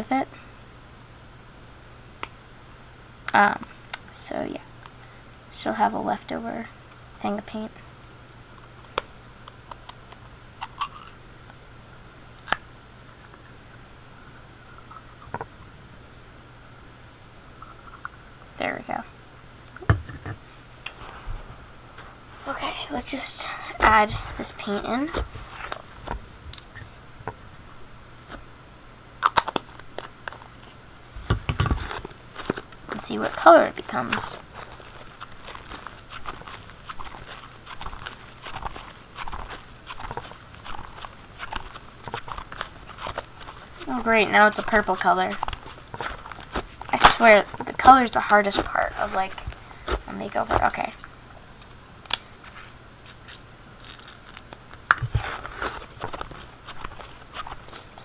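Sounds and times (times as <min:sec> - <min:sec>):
low thumps and rustling: 0:31.1 - 0:32.6, 0:55.0 - 0:57.9.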